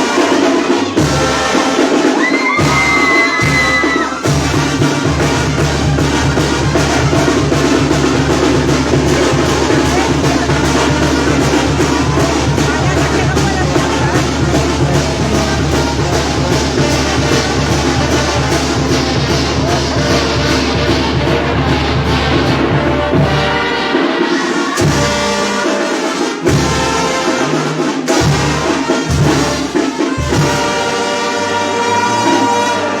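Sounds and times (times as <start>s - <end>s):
carnival band music: 0.0s - 33.0s
drums beating: 0.0s - 33.0s.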